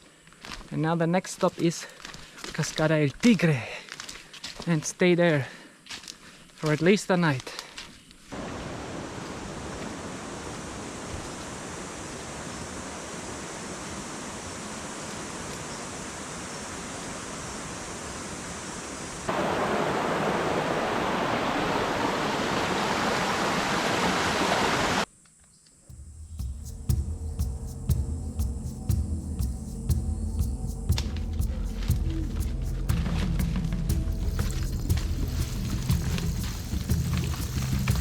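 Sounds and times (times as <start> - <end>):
running water rushing: 8.3 - 25.1, 31.3 - 38.0.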